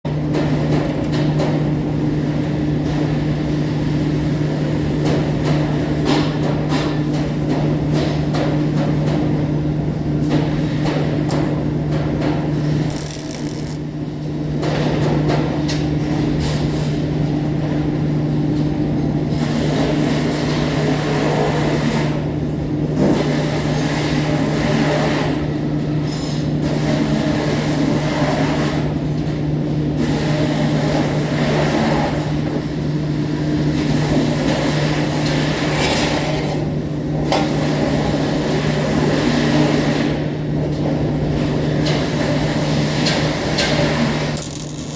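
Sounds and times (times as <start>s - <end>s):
welding arc crackling: 12.8s - 13.9s, 44.4s - 44.9s.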